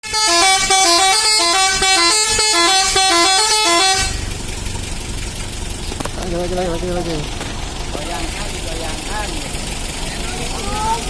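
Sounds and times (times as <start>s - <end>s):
musical multi-tone bus air horn: 0.0s - 4.3s.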